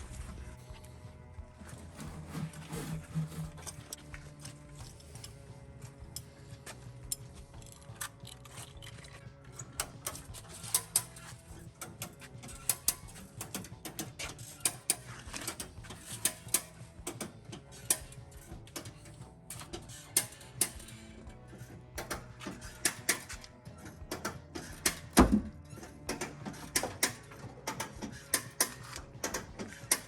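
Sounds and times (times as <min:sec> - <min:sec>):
steady low hum: 0:00.0 - 0:30.0
hand tools tapping sheet metal: 0:09.8 - 0:25.5, 0:26.1 - 0:30.0.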